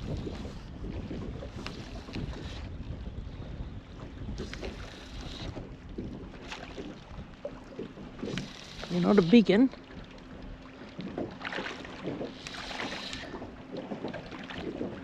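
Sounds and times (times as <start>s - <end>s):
water slapping boat hull: 0.0s - 15.0s
wind buffeting microphone: 0.0s - 15.0s.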